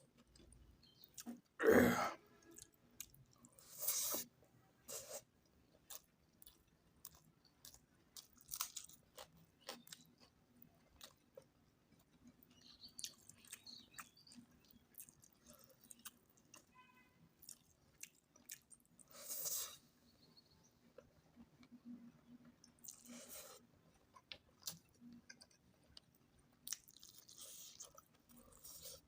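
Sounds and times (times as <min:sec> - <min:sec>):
wet chewing and mouth clicks: 0:05.0 - 0:16.8, 0:17.4 - 0:19.1, 0:21.0 - 0:29.0.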